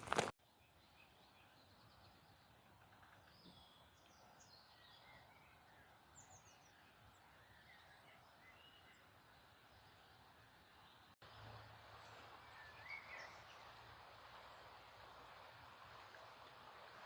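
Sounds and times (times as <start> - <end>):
outdoor background hiss: 0.0 - 17.0
small birds chirping: 0.5 - 9.1.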